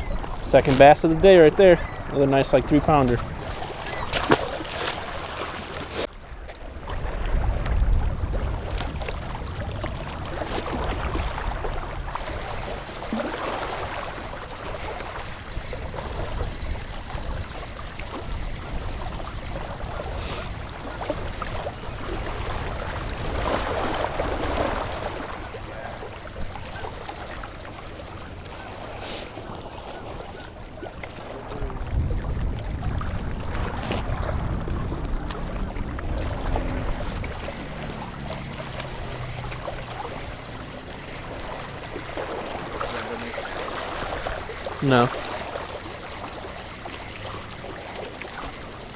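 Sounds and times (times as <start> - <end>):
wind buffeting microphone: 6.7 - 28.5, 30.7 - 46.9.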